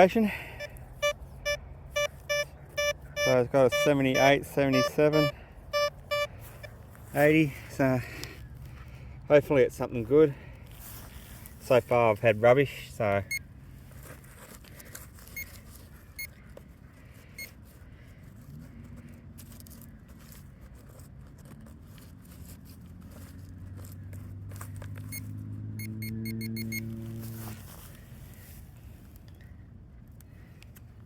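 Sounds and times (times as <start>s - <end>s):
metal detector beeps: 0.4s - 6.8s, 13.2s - 13.5s, 15.3s - 15.6s, 17.4s - 17.6s, 25.0s - 27.1s.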